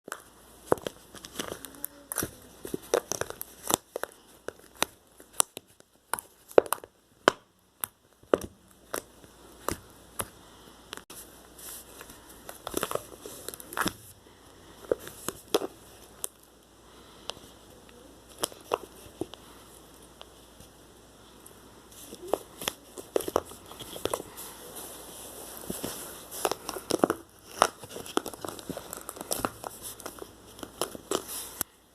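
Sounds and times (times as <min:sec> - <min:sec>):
slime crackling and popping: 0:00.1 - 0:11.1, 0:18.2 - 0:19.4, 0:22.0 - 0:24.4, 0:25.6 - 0:31.7.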